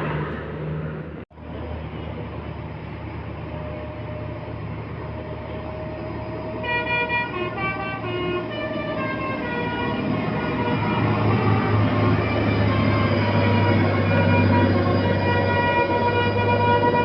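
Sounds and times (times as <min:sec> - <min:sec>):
bus engine rumbling: 0:00.0 - 0:17.0
road traffic: 0:00.0 - 0:17.0
bus horn playing a melody: 0:06.4 - 0:17.0.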